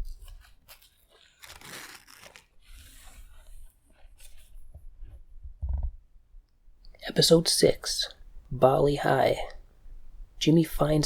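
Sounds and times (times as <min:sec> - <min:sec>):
packaging rustling: 0:00.2 - 0:02.6.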